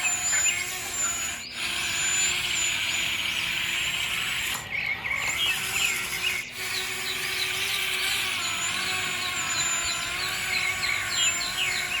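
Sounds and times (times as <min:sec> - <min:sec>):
small electric motor whining: 0:00.0 - 0:12.0.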